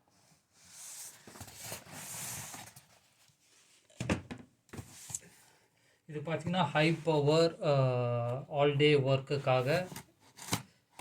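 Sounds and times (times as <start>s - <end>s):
cardboard rustling and scraping: 0.6s - 3.7s.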